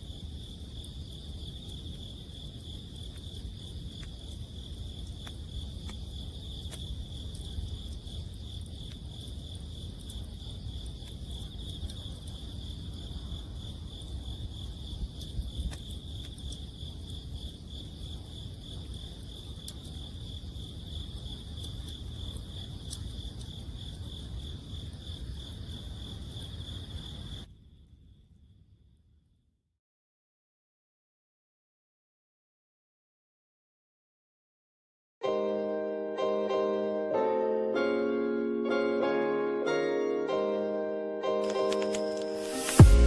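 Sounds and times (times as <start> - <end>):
campfire crackling: 0.0 - 27.4, 41.4 - 43.0
insects pulsing chorus: 0.0 - 27.5.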